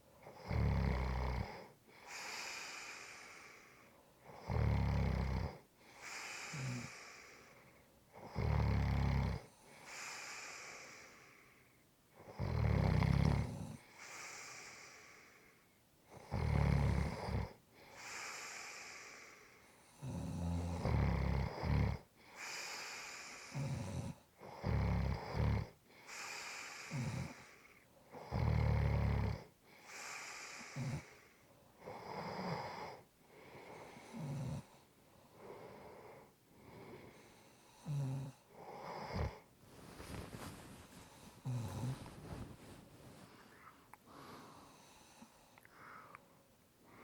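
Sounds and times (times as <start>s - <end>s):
person snoring: 0.4s - 3.7s, 4.4s - 7.5s, 8.2s - 11.3s, 12.3s - 15.3s, 16.2s - 19.4s, 20.0s - 27.6s, 28.2s - 34.7s, 37.8s - 42.6s
breathy exhale: 43.3s - 46.2s.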